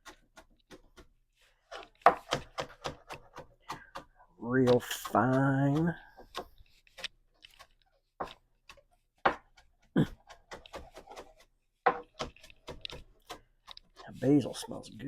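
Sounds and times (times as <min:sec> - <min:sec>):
knife chopping on cutting board: 0:02.0 - 0:04.1, 0:09.2 - 0:13.4.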